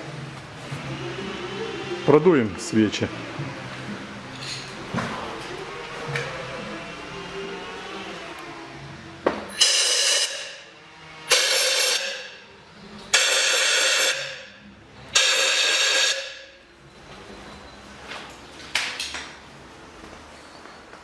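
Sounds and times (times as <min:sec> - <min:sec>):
compressed air blow gun bursts: 0:11.3 - 0:12.3, 0:13.1 - 0:14.4, 0:15.2 - 0:16.4.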